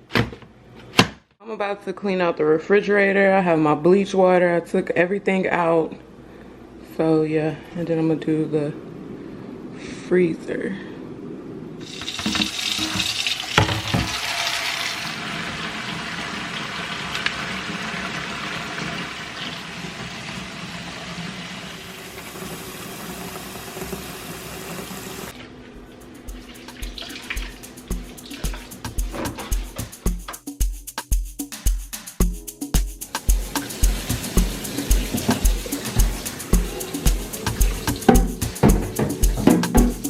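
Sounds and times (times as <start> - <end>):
tap running into a sink: 11.9 - 14.3, 33.5 - 40.0
music with a steady beat: 25.8 - 40.0
knock: 38.1 - 40.0.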